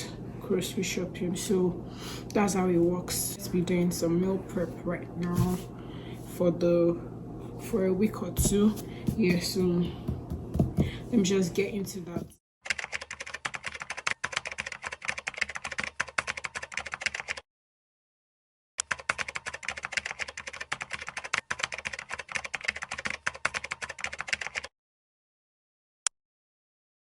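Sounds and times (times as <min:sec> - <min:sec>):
knife chopping on cutting board: 0:08.4 - 0:11.0.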